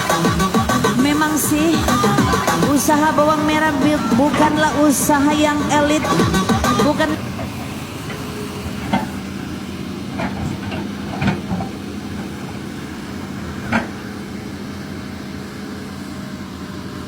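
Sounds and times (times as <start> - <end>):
diesel engine running: 0.0 - 17.0
short metallic clanks: 2.1 - 9.3.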